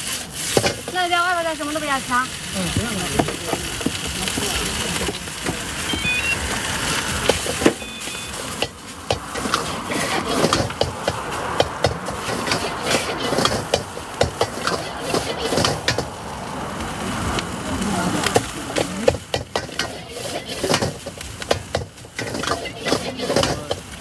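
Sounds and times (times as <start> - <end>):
background noise: 0.0 - 24.0
short high beeps: 5.8 - 6.5, 7.7 - 8.5
cooking utensils knocking: 7.2 - 16.1, 18.4 - 24.0.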